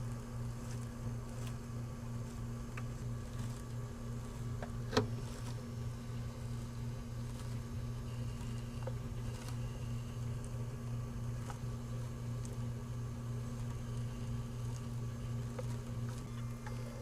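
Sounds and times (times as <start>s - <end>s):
low electrical hum: 0.0s - 17.0s.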